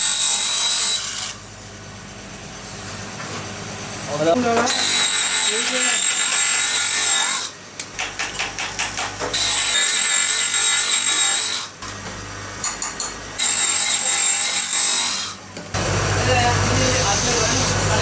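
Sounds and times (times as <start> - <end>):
small motor high whine: 15.8 - 18.0.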